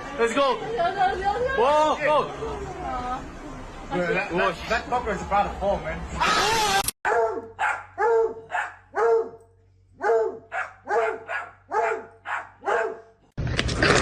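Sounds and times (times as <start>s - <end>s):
dog barking: 7.1s - 9.4s, 10.0s - 13.2s.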